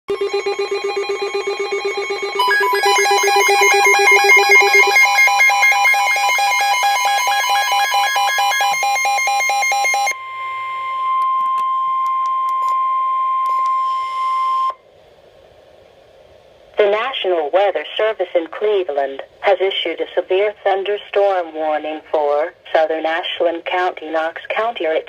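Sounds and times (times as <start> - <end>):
pulsing electronic alarm beeps: 0.1 - 11.0
steady alarm tone: 0.1 - 11.4.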